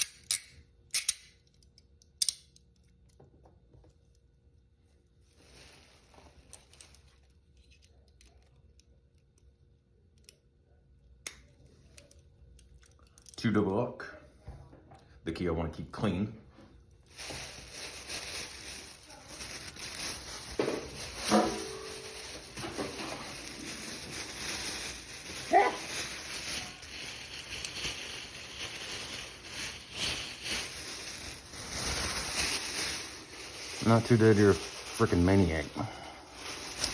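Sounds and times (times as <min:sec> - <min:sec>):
metal handcuffs clicking: 0:00.0 - 0:02.8.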